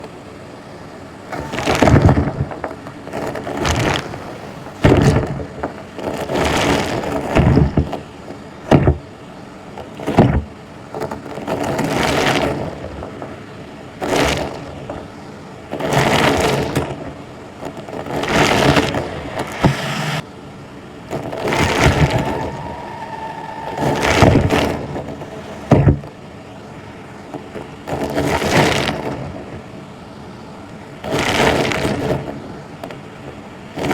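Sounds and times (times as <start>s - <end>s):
vacuum cleaner running: 1.3s - 2.2s, 18.4s - 20.2s.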